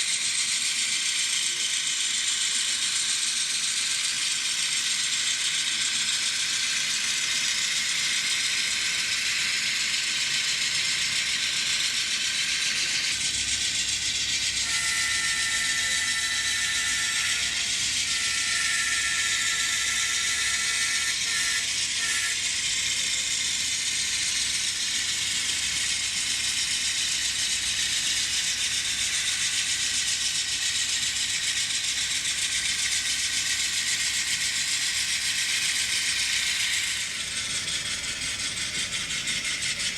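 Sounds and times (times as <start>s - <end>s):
model train motors whirring: 0.0s - 39.9s
multi-note train horn: 14.6s - 22.4s.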